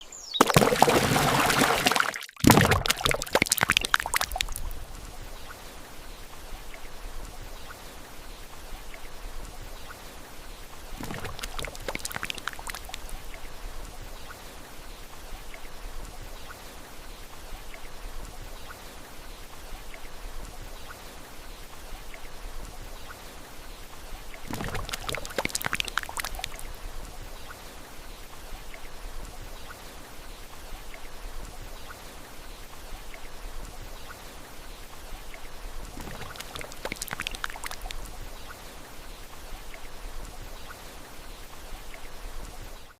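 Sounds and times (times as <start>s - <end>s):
liquid dripping and plopping: 0.3s - 4.8s, 11.0s - 13.4s, 24.4s - 26.7s, 35.9s - 38.2s
thick liquid pouring: 0.4s - 4.7s, 11.0s - 13.1s, 24.5s - 26.6s, 36.0s - 38.0s
liquid gurgling: 0.4s - 5.5s, 10.8s - 14.1s, 24.4s - 27.2s, 35.8s - 38.2s.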